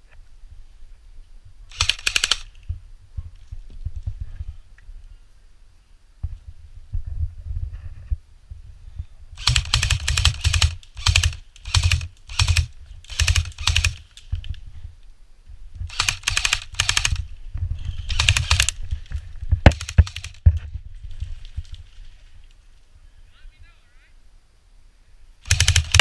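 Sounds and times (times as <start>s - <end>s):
airsoft guns firing bursts: 1.7s - 2.5s, 9.4s - 14.2s, 15.9s - 17.2s, 18.1s - 18.8s, 19.6s - 20.5s, 25.4s - 26.0s.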